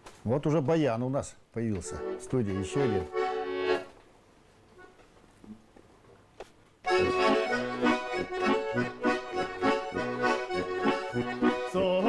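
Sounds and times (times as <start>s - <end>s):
button accordion playing: 1.8s - 4.0s, 6.8s - 12.0s.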